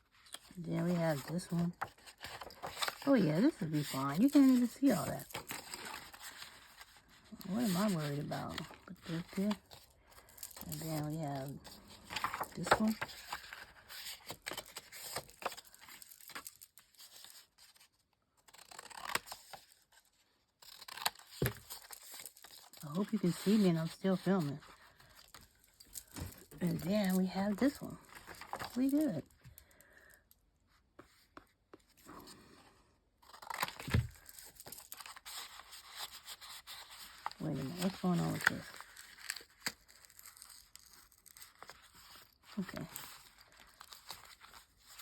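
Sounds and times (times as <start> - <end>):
paper rustling: 0.1 - 17.9, 20.6 - 30.1, 33.2 - 45.0
paper clicks: 11.7 - 16.4.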